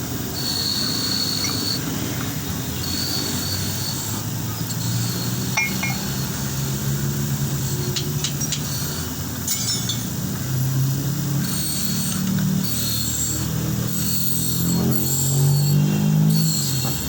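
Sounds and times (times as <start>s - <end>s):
light metallic clinks and taps: 5.6s - 6.1s, 8.0s - 8.7s, 9.5s - 10.2s.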